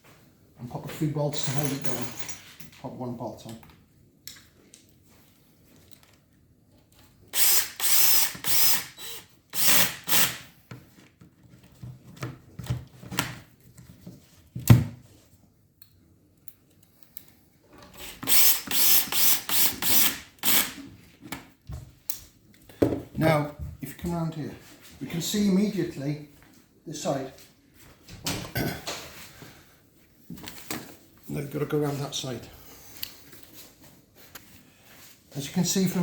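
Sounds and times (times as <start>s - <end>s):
power drill driving bolts: 7.3s - 10.5s, 18.1s - 20.8s.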